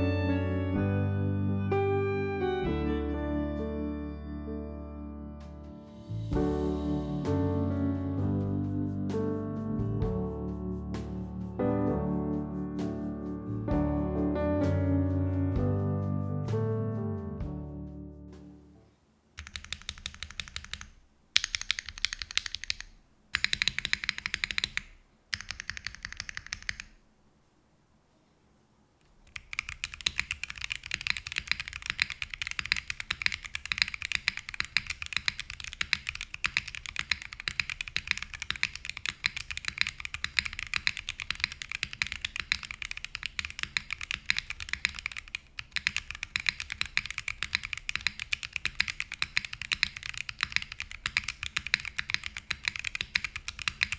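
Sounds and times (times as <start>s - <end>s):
mechanical keyboard typing: 19.4s - 27.0s, 29.2s - 53.9s.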